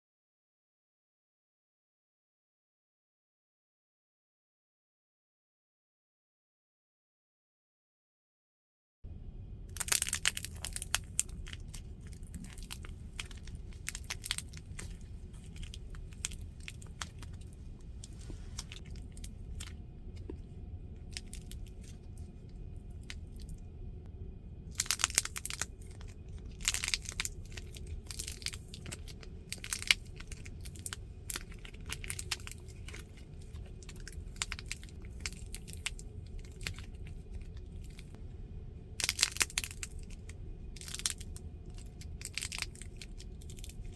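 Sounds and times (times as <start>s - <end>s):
crunching puffed wheat snacks: 9.7s - 20.4s, 21.0s - 23.6s, 24.7s - 38.2s, 39.0s - 43.9s.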